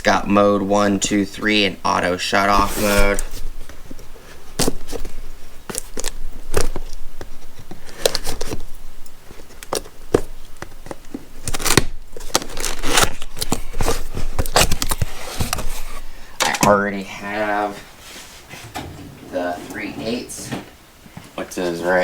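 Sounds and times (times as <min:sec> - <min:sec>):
packaging crinkling and tearing: 0:02.8 - 0:16.1.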